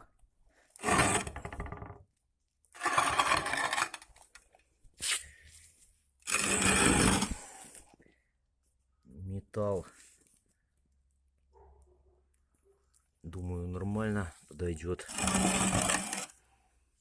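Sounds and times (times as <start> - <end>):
metal scraping and clattering: 15.0 - 16.3.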